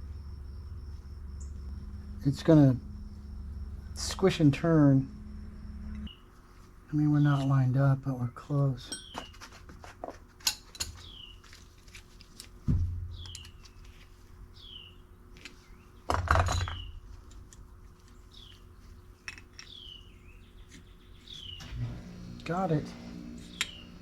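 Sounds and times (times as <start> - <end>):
bird chirping: 0.0 - 6.3, 13.1 - 13.9, 14.6 - 17.0, 18.3 - 21.7
small metal parts clicking and clinking: 19.2 - 19.8.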